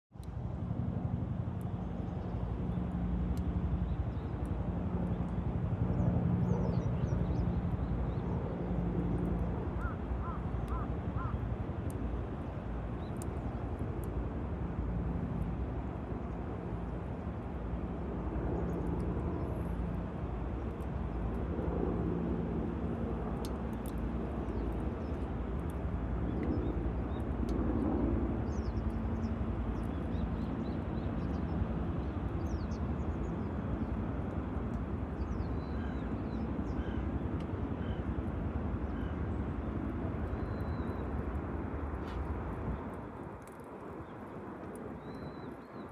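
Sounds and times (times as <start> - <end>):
fire low rumble: 9.0 - 35.6, 38.1 - 45.9
campfire crackling and popping: 22.5 - 25.9.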